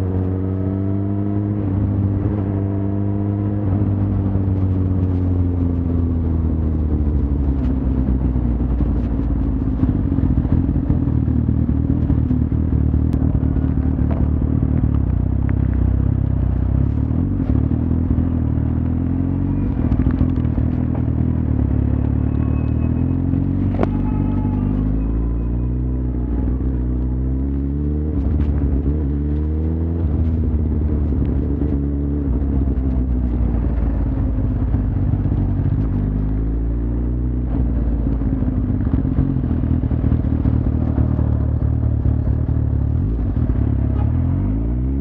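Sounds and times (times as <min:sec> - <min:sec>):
motorcycle engine running: 0:00.0 - 0:45.0.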